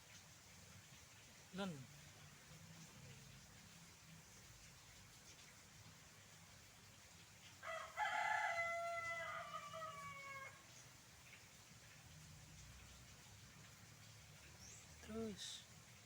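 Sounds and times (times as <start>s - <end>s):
rooster crowing: 7.6s - 10.6s.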